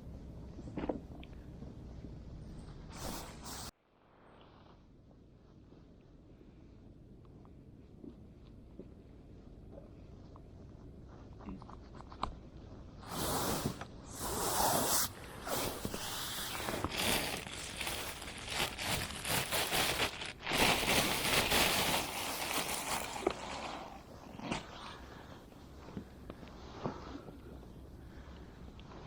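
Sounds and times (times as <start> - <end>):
rustling and scraping: 14.6 - 27.5.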